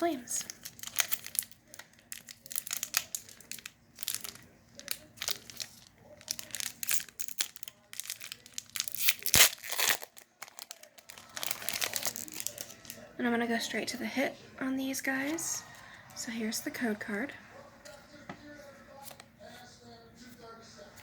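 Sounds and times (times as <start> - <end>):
foil wrapper crinkling: 0.0 - 13.1
foil wrapper tearing: 0.3 - 13.1.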